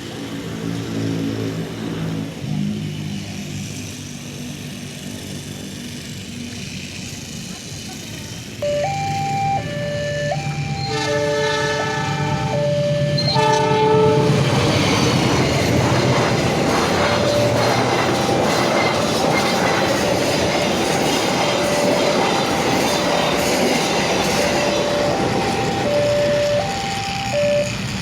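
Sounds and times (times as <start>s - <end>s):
level crossing alarm ringing: 8.6s - 28.0s
train horn blasts: 9.2s - 15.2s
train wheels clattering on rails: 10.4s - 28.0s.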